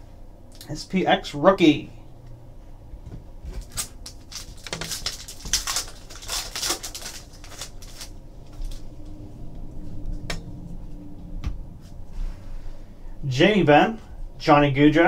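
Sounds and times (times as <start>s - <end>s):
cards and packaging rustling: 3.5s - 9.1s.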